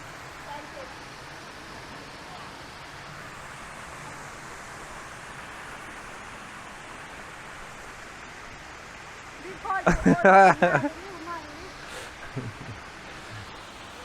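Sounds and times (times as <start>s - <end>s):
waterfall rushing: 0.0s - 14.0s.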